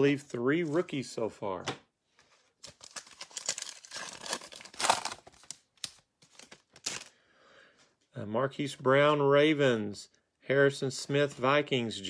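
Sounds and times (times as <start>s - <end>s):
card pack wrapper crinkling and tearing: 2.6s - 7.1s.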